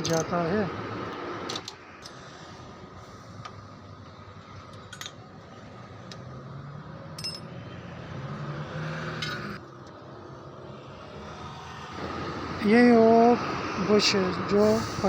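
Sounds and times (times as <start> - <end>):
light metallic clinks: 4.7 - 5.2, 7.2 - 7.6.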